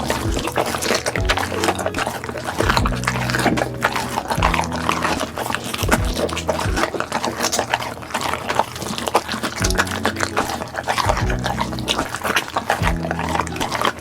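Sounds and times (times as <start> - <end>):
background music with bass line: 0.0 - 6.9, 9.6 - 12.2, 12.8 - 13.9
dog chewing and crunching: 0.0 - 14.0.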